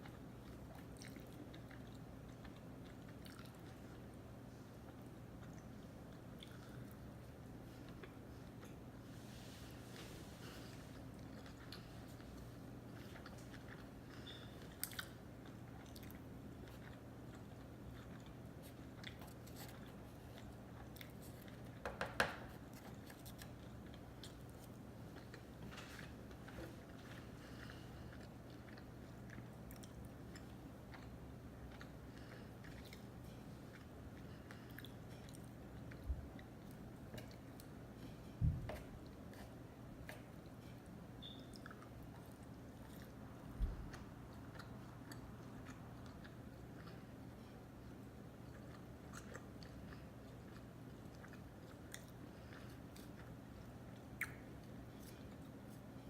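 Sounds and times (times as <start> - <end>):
person chewing food: 0.0 - 56.0
mouth clicks while chewing: 41.2 - 42.4, 54.0 - 55.5.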